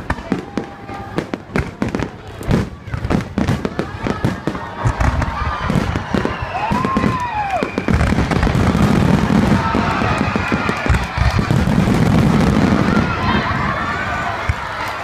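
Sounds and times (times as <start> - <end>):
fireworks crackling and banging: 0.0 - 15.0
firework whistle: 5.7 - 13.4.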